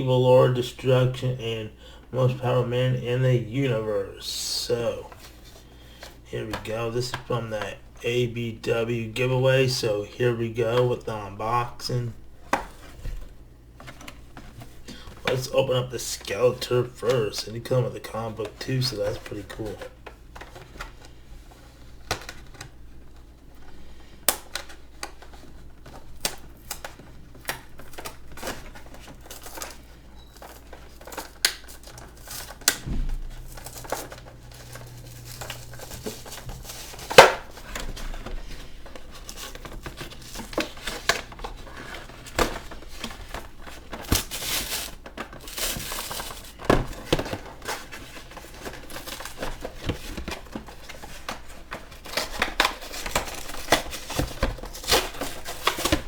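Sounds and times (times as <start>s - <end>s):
plastic and cardboard crinkling: 10.6s - 56.0s
plastic snap: 37.1s - 37.4s.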